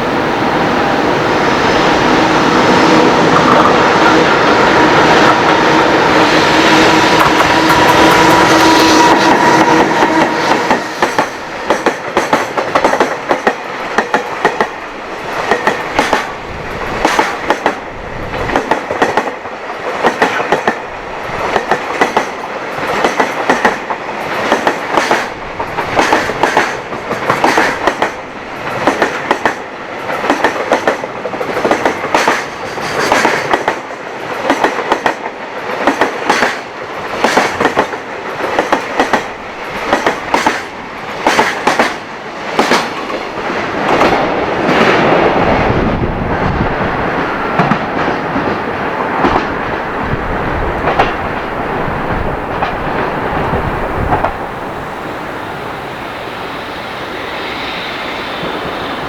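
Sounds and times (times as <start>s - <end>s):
freight train wheels clattering: 6.8s - 54.5s.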